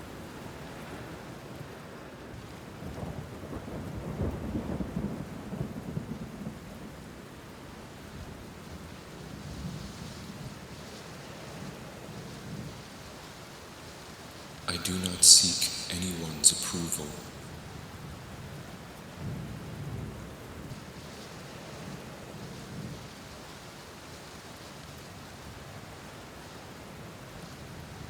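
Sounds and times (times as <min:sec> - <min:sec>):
steady rain: 0:20.7 - 0:25.3.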